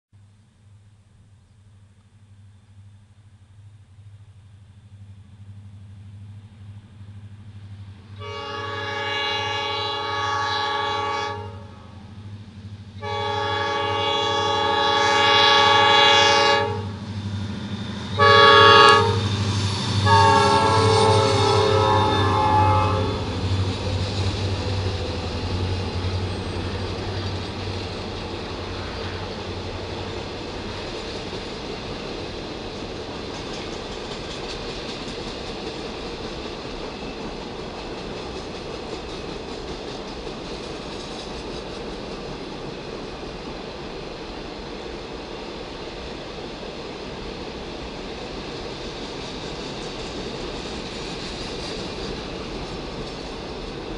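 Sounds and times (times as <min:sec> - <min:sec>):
train air horn: 0:08.2 - 0:12.1, 0:13.0 - 0:17.0, 0:18.1 - 0:19.4, 0:20.0 - 0:25.0
train wheels clattering on rails: 0:12.1 - 0:53.9.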